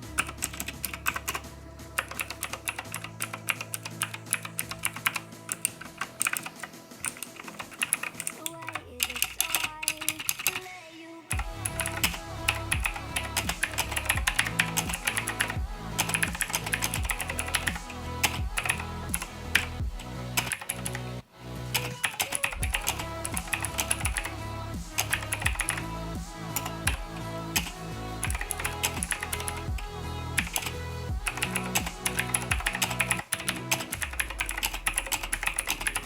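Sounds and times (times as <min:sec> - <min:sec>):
electronic music with steady beat: 0:00.0 - 0:36.0
clicky mechanical keyboard typing: 0:02.0 - 0:10.6, 0:11.4 - 0:18.9, 0:20.4 - 0:21.0, 0:21.8 - 0:24.3, 0:25.0 - 0:25.8, 0:28.2 - 0:29.8, 0:31.3 - 0:36.0.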